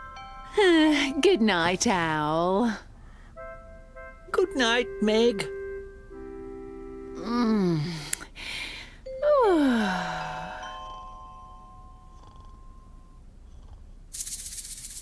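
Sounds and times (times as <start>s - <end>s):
steady ringing tone: 0.0s - 2.6s, 9.0s - 13.4s
tone sliding downward: 3.4s - 13.2s.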